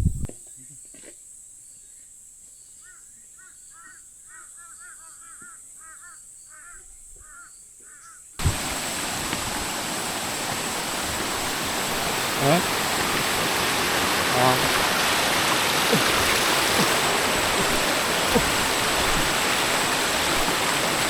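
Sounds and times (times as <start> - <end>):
stream water rushing: 8.4 - 21.0.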